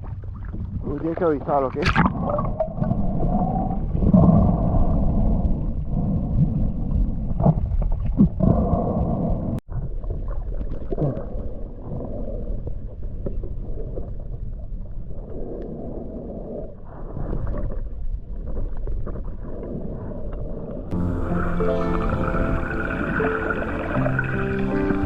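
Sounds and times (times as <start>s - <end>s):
muffled underwater rumble: 0.0s - 25.0s
water gurgling: 20.9s - 25.0s.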